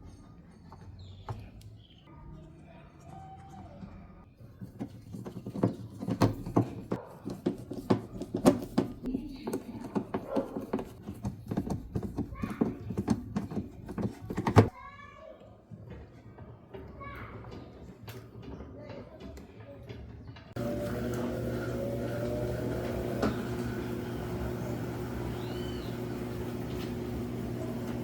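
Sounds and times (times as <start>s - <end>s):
washing machine spin knocking: 5.2s - 14.7s, 20.6s - 28.0s.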